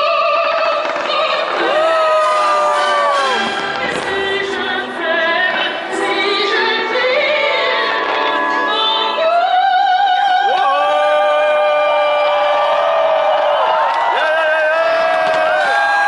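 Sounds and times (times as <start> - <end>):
woman singing opera: 3.4 - 11.0.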